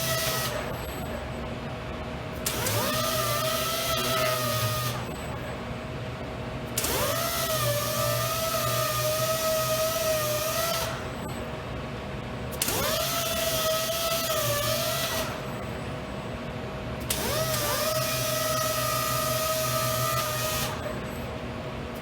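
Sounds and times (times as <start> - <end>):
sander whining: 2.5 - 5.1.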